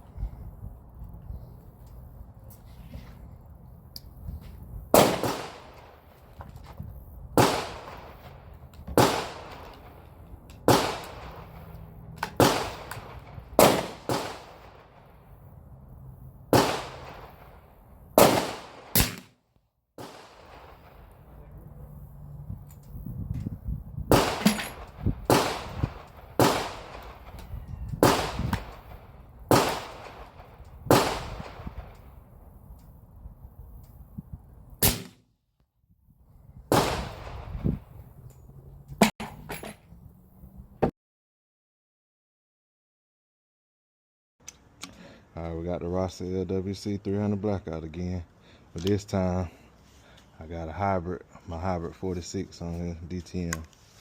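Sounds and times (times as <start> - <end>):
gunshots echoing: 4.9 - 6.0, 7.4 - 8.4, 9.0 - 10.0, 10.7 - 11.7, 12.4 - 15.0, 16.5 - 17.6, 18.2 - 19.4, 20.0 - 21.0, 24.1 - 27.4, 28.0 - 31.9, 36.7 - 37.5.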